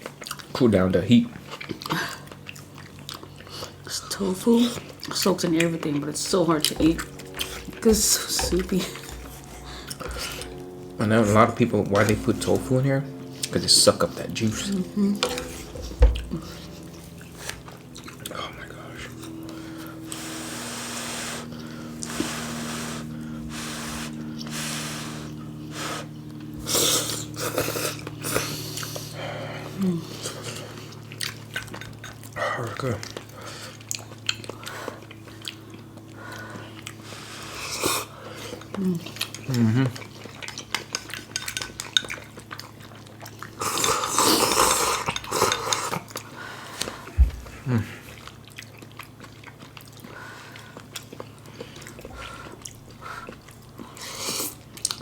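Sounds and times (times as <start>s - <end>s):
metal utensils clinking against bowls: 40.4s - 42.3s, 43.7s - 46.1s.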